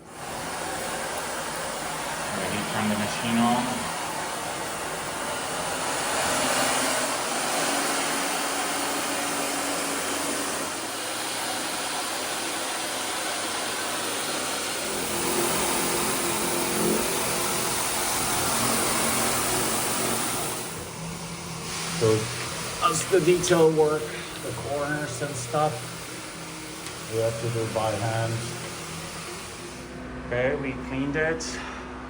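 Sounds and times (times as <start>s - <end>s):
steam cleaner hissing: 0.0s - 30.0s
motor hum: 0.0s - 32.0s.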